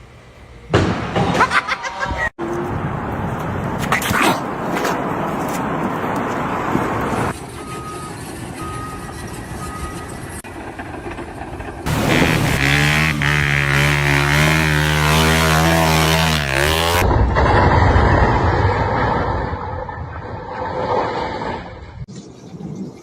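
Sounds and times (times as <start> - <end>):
engine running loudly: 11.8 - 17.0.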